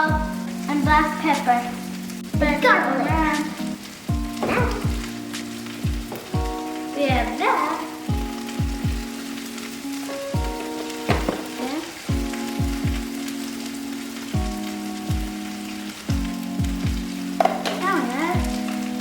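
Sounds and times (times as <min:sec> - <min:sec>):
background music with chords: 0:00.0 - 0:19.0
vegetables sizzling in hot oil: 0:00.0 - 0:19.0
deep bass drum beat: 0:04.1 - 0:05.2, 0:05.8 - 0:07.3.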